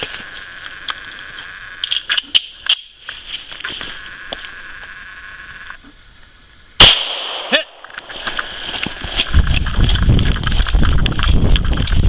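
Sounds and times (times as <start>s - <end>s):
frogs and insects chorus: 0.0s - 6.8s.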